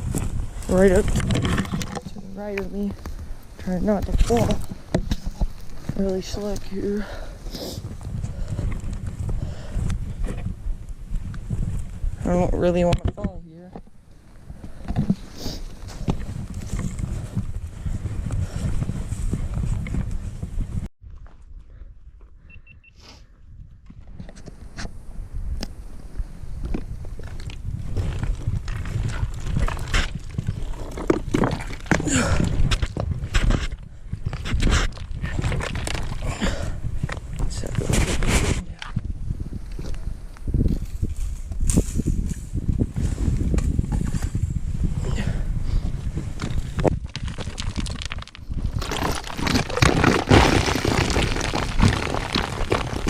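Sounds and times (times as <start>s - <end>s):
footsteps crunching on loose ground: 0.0s - 10.5s, 46.0s - 53.0s.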